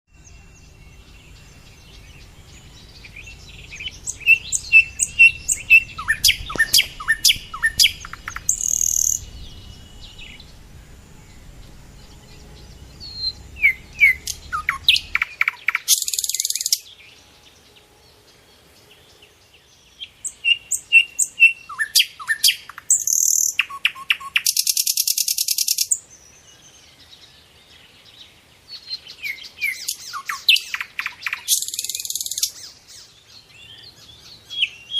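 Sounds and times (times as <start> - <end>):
birds chirping: 0.1 - 34.9
low rumble: 0.2 - 15.4
harsh rasping bird calls: 0.4 - 16.8.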